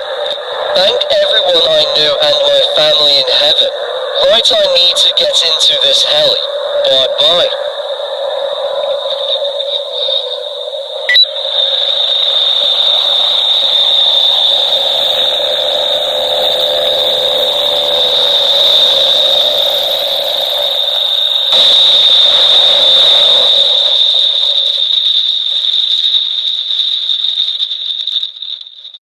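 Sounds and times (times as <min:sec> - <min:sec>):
high-pitched electronic alarm tone: 0:11.1 - 0:11.3
sharp click: 0:11.1 - 0:11.3.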